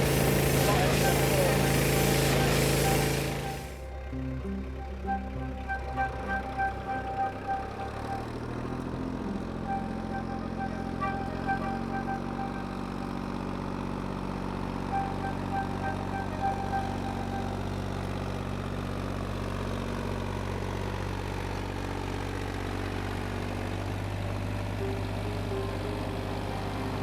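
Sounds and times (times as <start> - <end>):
engine humming: 0.0 - 27.0
thin high whistling tone: 14.9 - 18.0.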